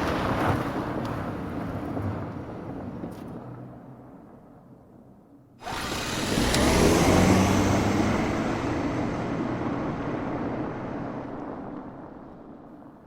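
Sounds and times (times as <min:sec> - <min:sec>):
car passing by: 0:05.6 - 0:12.5.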